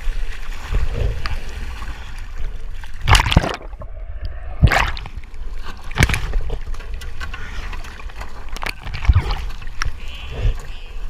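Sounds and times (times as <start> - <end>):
seawater sloshing and gurgling: 0.0 - 11.0
water splashes: 0.0 - 11.0.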